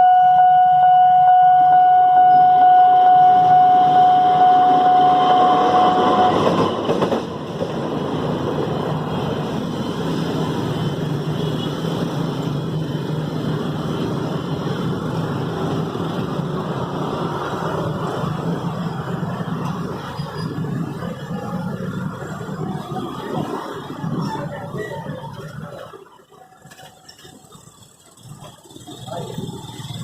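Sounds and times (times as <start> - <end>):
level crossing warning siren: 0.0 - 20.1
train rumbling past: 0.2 - 30.0.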